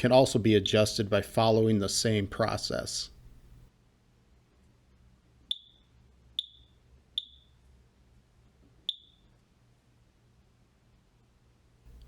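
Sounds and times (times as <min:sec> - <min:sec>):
keypad beeps: 0:05.5 - 0:05.8, 0:06.4 - 0:07.5, 0:08.9 - 0:09.2.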